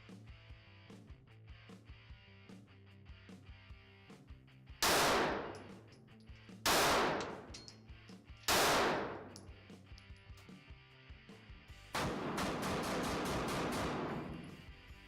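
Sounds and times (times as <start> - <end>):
pistol shots with echo: 4.8 - 5.8, 6.7 - 7.7, 8.5 - 9.4, 12.0 - 14.7.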